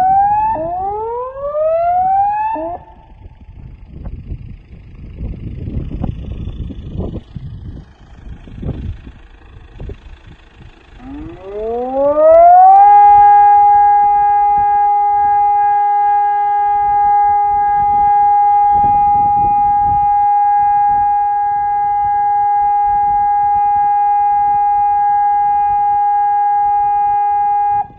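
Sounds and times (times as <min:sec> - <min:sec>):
alert siren: 0:00.0 - 0:03.4, 0:11.0 - 0:27.9.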